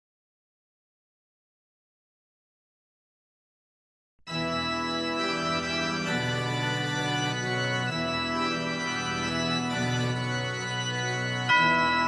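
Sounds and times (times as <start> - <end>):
organ-toned keyboard chords: 4.3 - 12.0.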